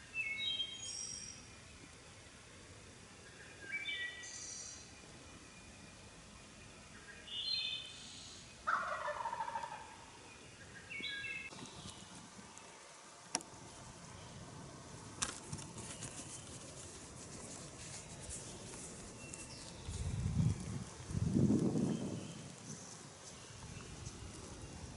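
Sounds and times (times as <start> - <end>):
turkey gobbling: 8.6 - 10.1.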